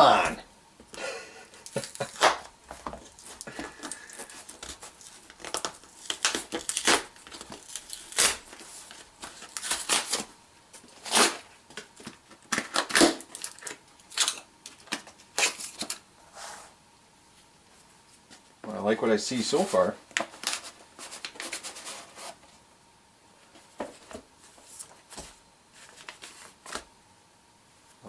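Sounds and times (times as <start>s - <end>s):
packaging tearing and crinkling: 1.7s - 2.5s, 3.1s - 10.3s, 10.9s - 16.0s, 20.1s - 22.4s.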